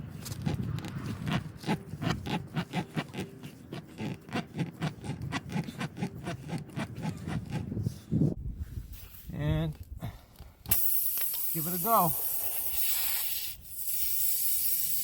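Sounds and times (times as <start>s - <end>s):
rasp scraping in tire rubber: 0.0s - 9.3s.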